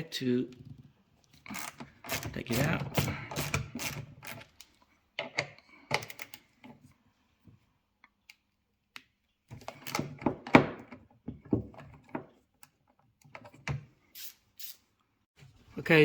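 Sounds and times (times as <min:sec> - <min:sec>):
hand tool clicking on metal parts: 0:01.4 - 0:04.7.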